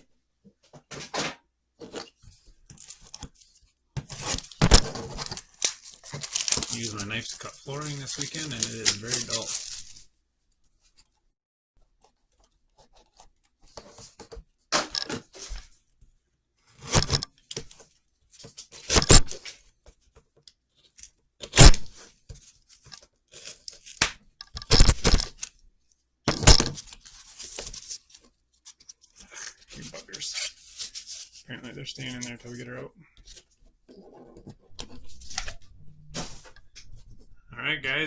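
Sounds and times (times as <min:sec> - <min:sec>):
sharp cracks and knocks: 0:04.0 - 0:06.9, 0:08.6 - 0:09.8, 0:16.9 - 0:17.3, 0:18.9 - 0:19.4, 0:21.5 - 0:22.0, 0:24.0 - 0:25.5, 0:26.3 - 0:26.9
knife tearing packaging: 0:04.2 - 0:07.2, 0:07.8 - 0:10.0, 0:18.8 - 0:19.5, 0:21.6 - 0:22.0, 0:24.6 - 0:25.5, 0:26.3 - 0:27.6.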